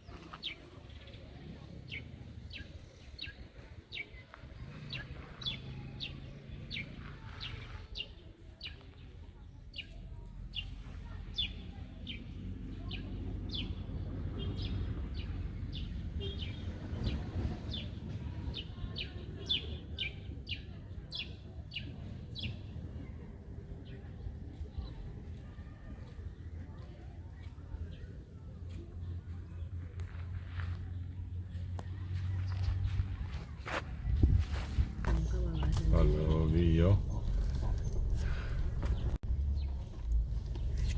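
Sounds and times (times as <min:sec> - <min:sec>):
low rumble: 0:29.4 - 0:40.9.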